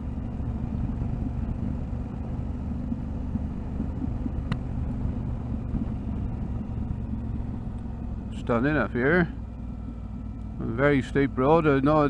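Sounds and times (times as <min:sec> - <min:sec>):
motorcycle engine rumble: 0:00.0 - 0:12.0
road and wind noise: 0:00.0 - 0:12.0.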